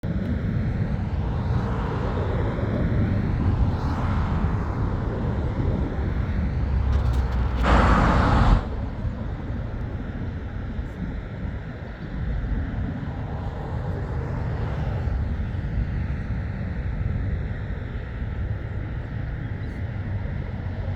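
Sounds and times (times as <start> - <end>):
airplane engines rumbling: 0.0 - 20.9
rush of noise: 0.8 - 11.6.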